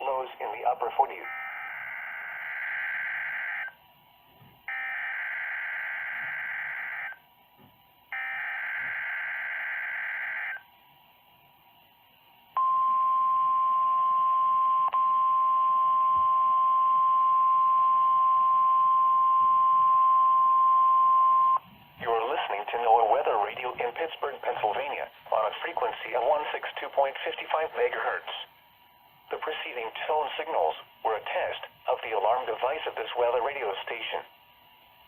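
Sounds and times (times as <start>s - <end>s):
steady warning alarm tone: 0.0s - 3.9s, 4.7s - 7.4s, 8.0s - 10.8s, 12.6s - 28.2s.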